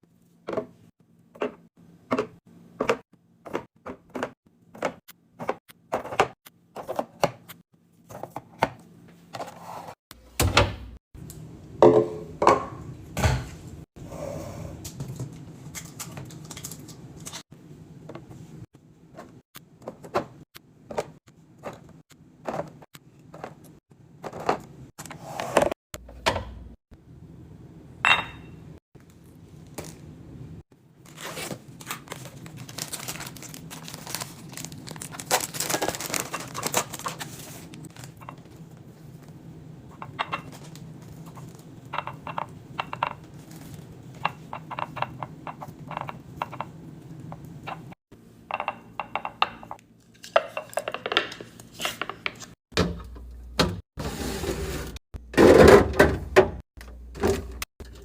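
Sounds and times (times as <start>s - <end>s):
glass clink: 28.1s - 28.6s
packaging rustling and tearing: 31.0s - 38.1s
containers knocking and clicking: 41.4s - 43.3s, 44.2s - 53.2s.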